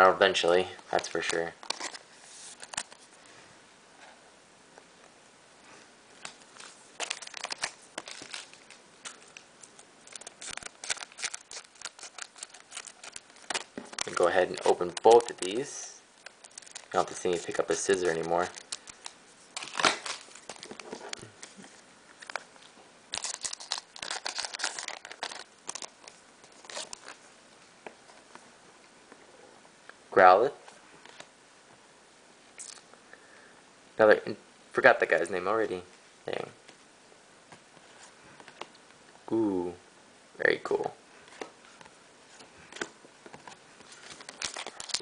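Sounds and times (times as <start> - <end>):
foil wrappers crinkling: 0.9 - 3.1, 6.5 - 22.5, 23.1 - 27.2, 42.6 - 45.0.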